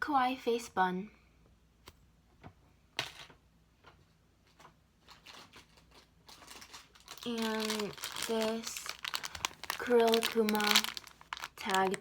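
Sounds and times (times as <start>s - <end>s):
soft plastic crinkling: 3.9s - 12.0s.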